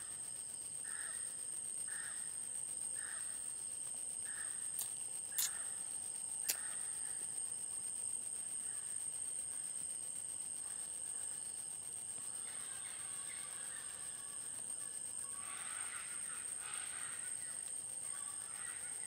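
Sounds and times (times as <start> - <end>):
insect drone: 0.0 - 19.0
sharp clicks: 4.8 - 5.6, 6.4 - 6.8.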